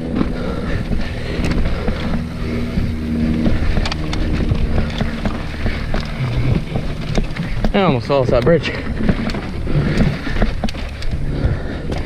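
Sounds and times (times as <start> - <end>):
bike rattling over bumps: 0.0 - 12.0
tyres rumbling on trail: 0.0 - 12.0.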